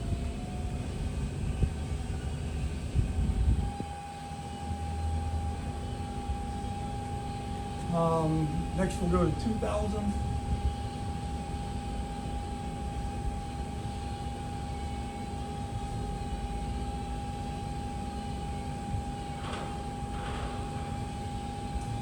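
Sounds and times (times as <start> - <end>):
machine spindle whining: 0.0 - 22.0.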